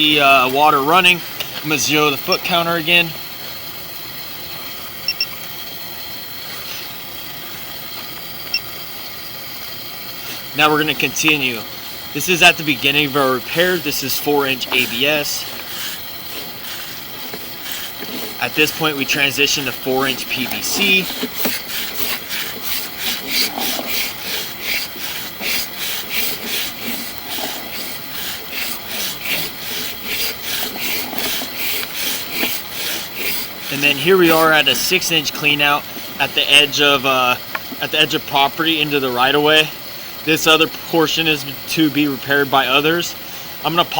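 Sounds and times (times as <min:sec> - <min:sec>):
faint high whine: 0:00.0 - 0:43.0
steady hiss: 0:00.0 - 0:43.9
short electronic beeps: 0:05.1 - 0:05.3
push rod scraping in pipe: 0:10.2 - 0:37.1.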